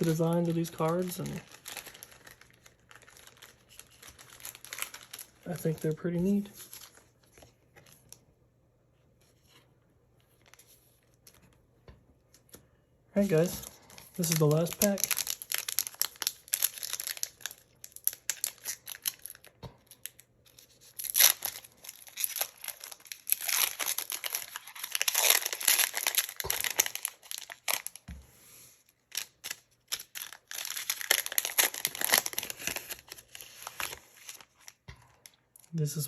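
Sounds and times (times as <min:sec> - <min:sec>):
foil wrapper tearing and crinkling: 0:00.0 - 0:07.1, 0:13.2 - 0:28.0, 0:28.9 - 0:34.8.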